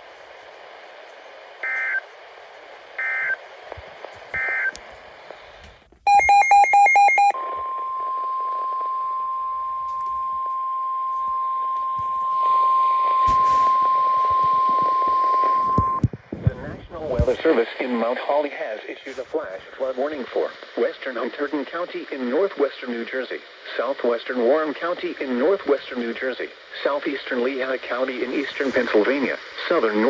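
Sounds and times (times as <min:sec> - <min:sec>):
radio hiss: 0:00.0 - 0:06.0, 0:07.2 - 0:30.0
rapid beeps: 0:01.6 - 0:02.0, 0:06.1 - 0:07.4
steady warning alarm tone: 0:06.1 - 0:16.0.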